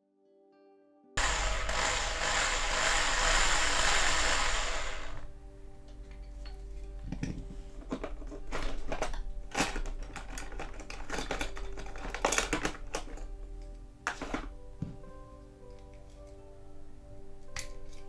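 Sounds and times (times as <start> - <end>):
tools and metal parts clicking: 6.2 - 14.4.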